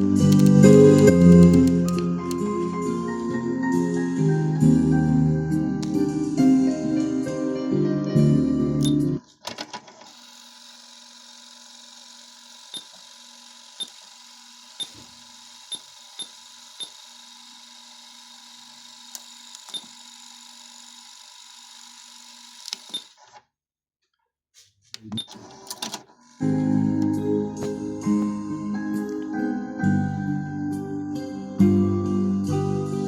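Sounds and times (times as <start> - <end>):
sharp mechanical clicks: 0.3 - 2.4, 22.6 - 23.2.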